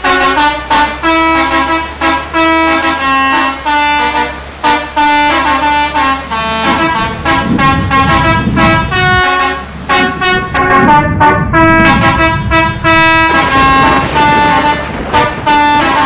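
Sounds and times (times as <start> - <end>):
musical air horn tune: 0.0 - 16.0
low rumble: 6.7 - 16.0.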